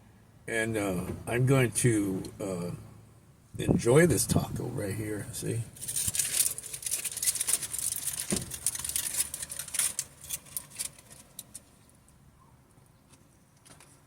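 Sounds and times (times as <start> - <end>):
taco crackling as eaten: 5.8 - 11.7.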